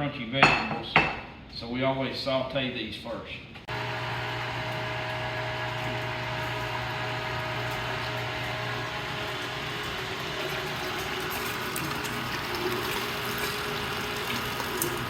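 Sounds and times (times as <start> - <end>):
electric meat grinder running: 3.7 - 15.0.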